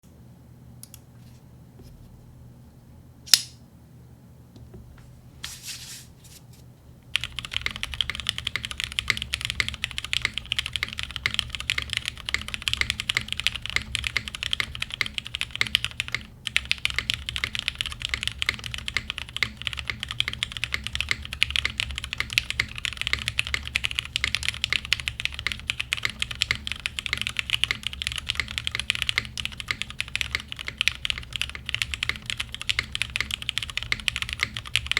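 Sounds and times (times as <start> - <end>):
sharp click: 3.3 - 3.6
fast mechanical keyboard typing: 7.1 - 34.9.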